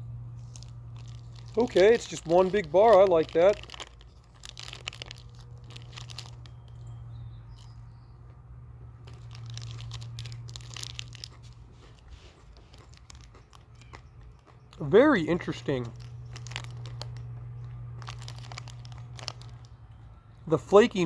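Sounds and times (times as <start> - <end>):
low hum: 0.0 - 11.9
candy wrapper crinkling: 0.2 - 7.9, 8.8 - 21.0.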